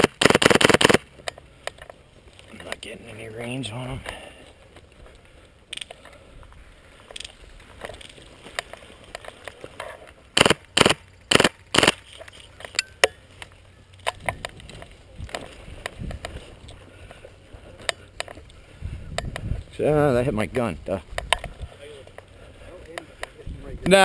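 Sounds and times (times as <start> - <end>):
airsoft rifle shots: 0.0 - 1.1, 10.4 - 12.1
faint clicks: 4.0 - 10.2.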